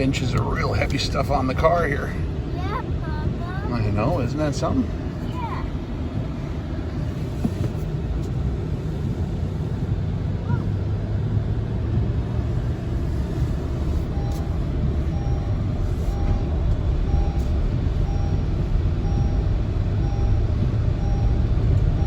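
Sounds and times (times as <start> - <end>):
faint electronic beep: 18.1 - 19.4.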